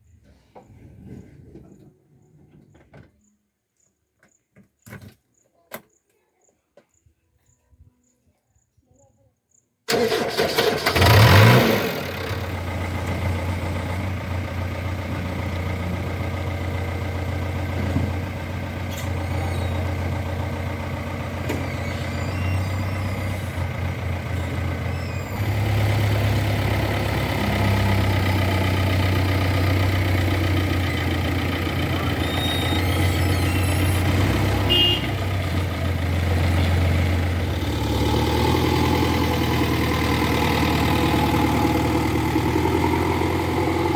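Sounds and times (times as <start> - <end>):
diesel engine idling: 9.9 - 43.9.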